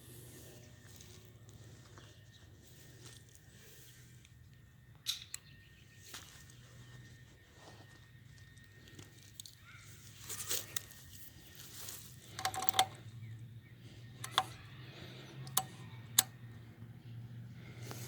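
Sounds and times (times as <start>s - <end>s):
sharp clicks and knocks: 12.3s - 13.0s, 14.2s - 14.6s.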